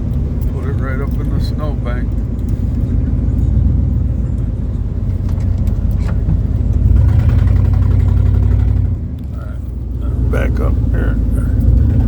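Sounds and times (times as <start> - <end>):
truck engine drone under load: 0.0 - 12.0.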